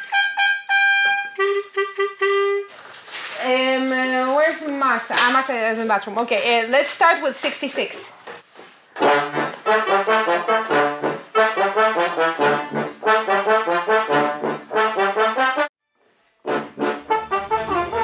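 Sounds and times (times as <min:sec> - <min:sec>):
brass horn section playing: 0:00.0 - 0:03.3, 0:09.0 - 0:15.7, 0:16.4 - 0:18.0.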